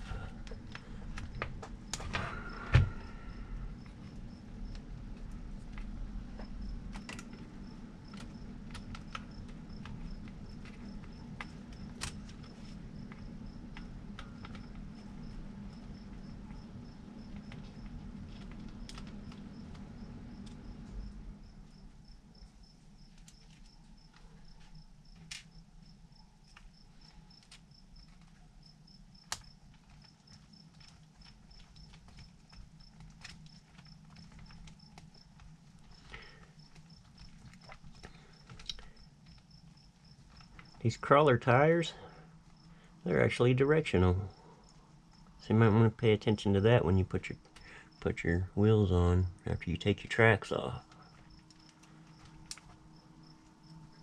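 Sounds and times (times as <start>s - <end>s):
cricket chirping: 0.0s - 54.0s
low background rumble: 0.0s - 54.0s
small clicks and taps: 3.8s - 19.8s, 29.2s - 40.8s, 50.9s - 52.8s.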